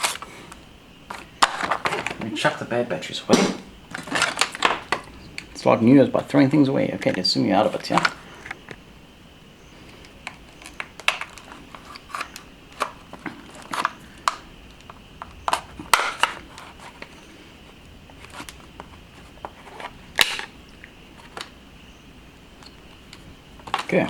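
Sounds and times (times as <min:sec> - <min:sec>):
plastic case clicking and snapping: 0:10.0 - 0:16.4, 0:20.2 - 0:20.5, 0:22.6 - 0:24.0.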